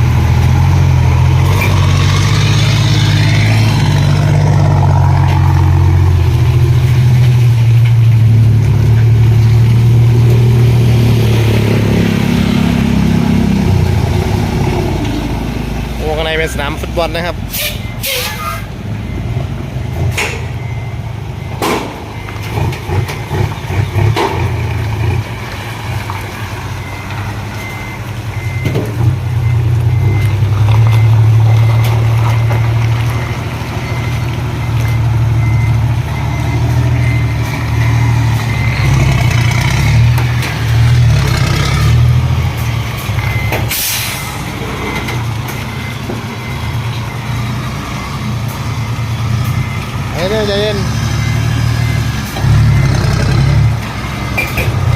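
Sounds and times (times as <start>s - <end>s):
truck diesel engine running: 0.0s - 54.9s
reversing beep: 16.0s - 23.8s, 26.8s - 54.7s.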